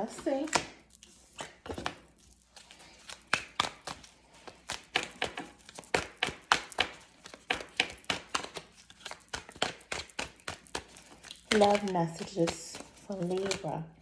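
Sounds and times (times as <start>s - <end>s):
cards being shuffled: 0.2s - 13.8s.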